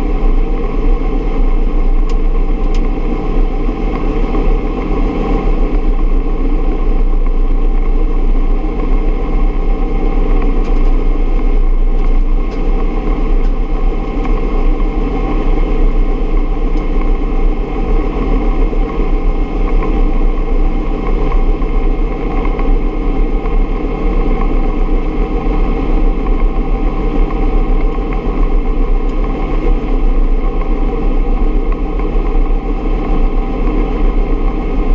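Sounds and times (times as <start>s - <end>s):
helicopter engine and rotor drone: 0.0s - 34.9s.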